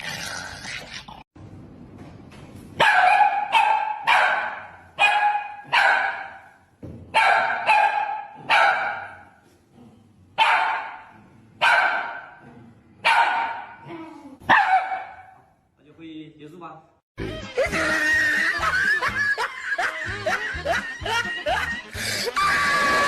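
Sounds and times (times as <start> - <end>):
dog barking: 2.8 - 9.4, 10.4 - 12.4, 13.0 - 13.8, 14.5 - 15.5.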